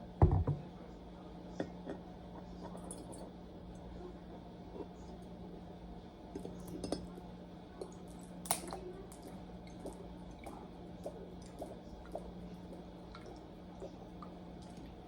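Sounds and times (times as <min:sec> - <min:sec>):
wet liquid sounds: 0:07.8 - 0:15.0.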